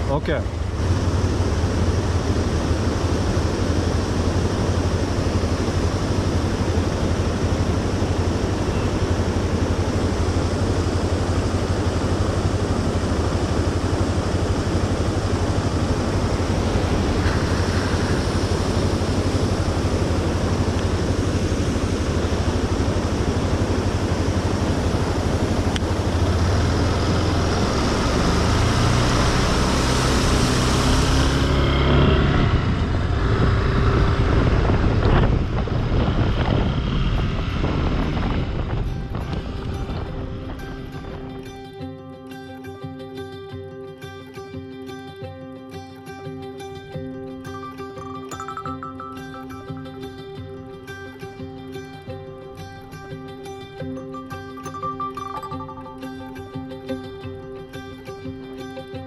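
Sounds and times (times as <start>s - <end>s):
motorcycle engine running: 0.0s - 41.8s.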